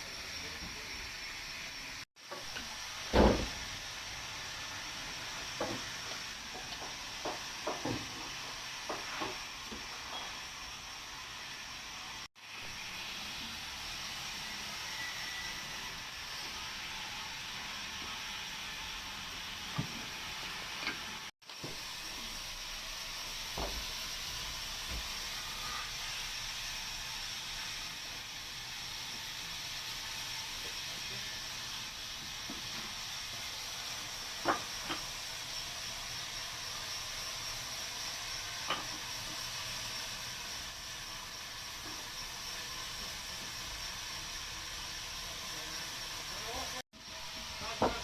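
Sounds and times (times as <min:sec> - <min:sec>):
bandsaw hissing: 0:00.0 - 0:48.0.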